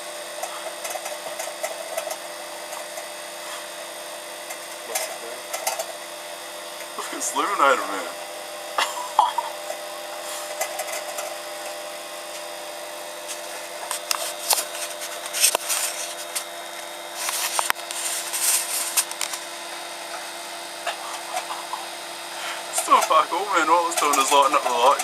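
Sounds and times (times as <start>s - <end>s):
microwave oven humming: 0.0s - 25.0s
crackling and scratching: 4.4s - 6.0s, 13.2s - 19.5s.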